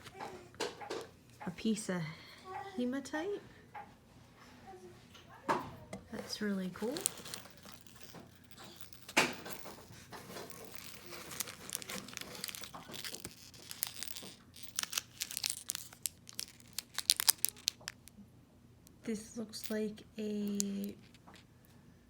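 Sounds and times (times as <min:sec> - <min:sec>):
packaging crinkling and tearing: 0:06.8 - 0:18.2.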